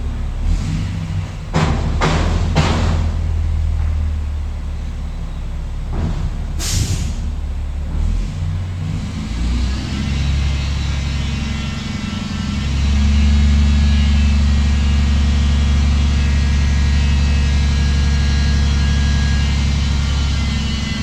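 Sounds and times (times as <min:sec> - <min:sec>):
diesel engine running: 0:00.0 - 0:21.0
air brake hiss: 0:06.6 - 0:07.4.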